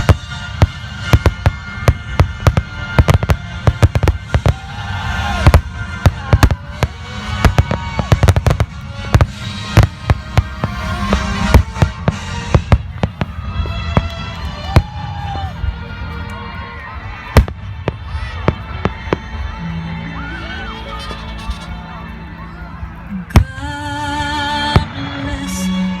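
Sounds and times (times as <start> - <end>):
fireworks bangs: 0.0 - 15.5, 17.2 - 19.6.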